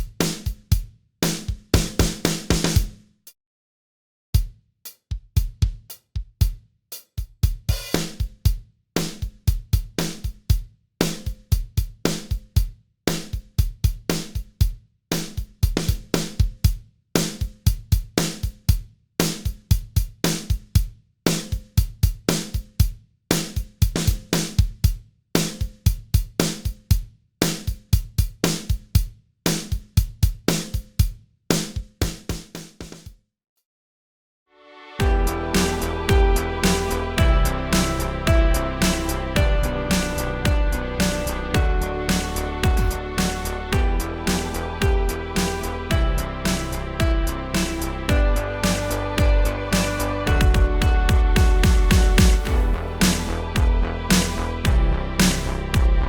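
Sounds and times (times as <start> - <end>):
drum kit loop: 0.0 - 3.0, 4.4 - 33.0, 35.0 - 56.0.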